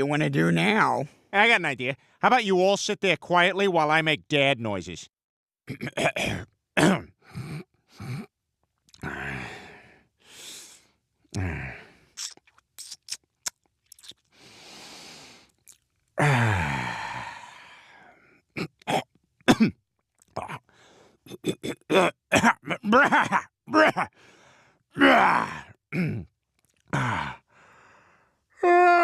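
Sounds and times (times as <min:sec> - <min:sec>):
man groaning: 0:09.0 - 0:09.6, 0:11.3 - 0:11.9, 0:16.2 - 0:17.6, 0:22.8 - 0:24.1, 0:25.0 - 0:26.2, 0:26.9 - 0:27.4, 0:28.6 - 0:29.0
man sighing: 0:11.3 - 0:12.0, 0:16.2 - 0:18.1, 0:26.9 - 0:27.9
mouth clicks and lip smacks: 0:12.2 - 0:14.4, 0:15.5 - 0:16.0.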